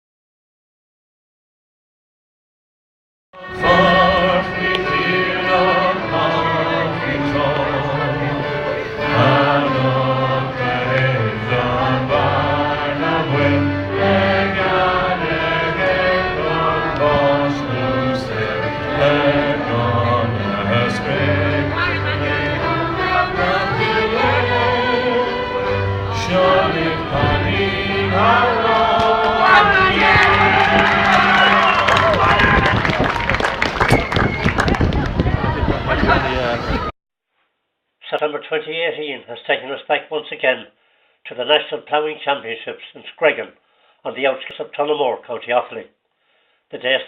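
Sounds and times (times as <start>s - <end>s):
choir singing: 3.4s - 32.2s
low musical accompaniment: 3.4s - 32.2s.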